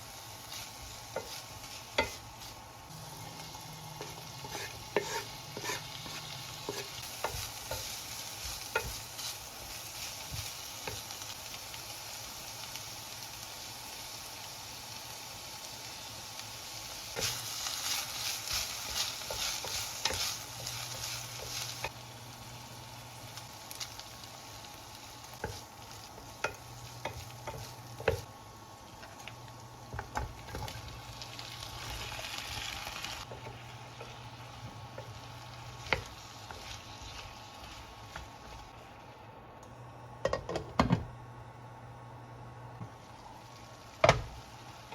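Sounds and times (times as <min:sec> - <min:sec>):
food sizzling in a frying pan: 0:00.0 - 0:44.9
utensil tapping pan: 0:01.1 - 0:02.2, 0:04.0 - 0:09.3, 0:25.4 - 0:28.3.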